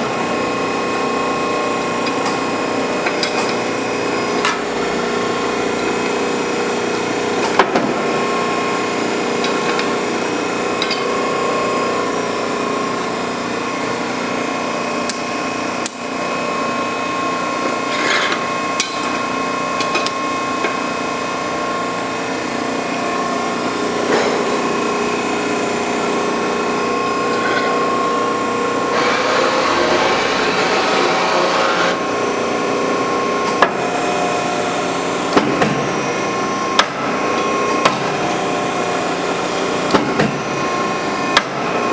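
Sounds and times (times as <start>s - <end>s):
hydraulic pump motor humming: 25.6s - 33.3s.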